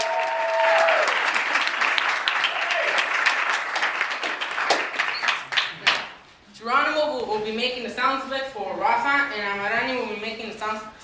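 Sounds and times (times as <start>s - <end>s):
person whooping: 0.0s - 1.2s
audience applauding: 0.0s - 6.2s.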